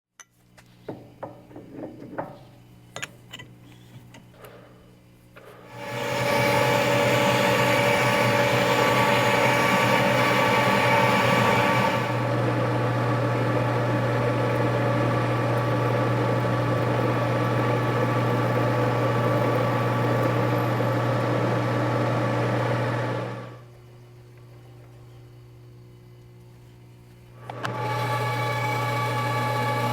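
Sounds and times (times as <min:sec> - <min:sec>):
machine tool motor hum: 0:05.4 - 0:23.6, 0:27.2 - 0:29.9.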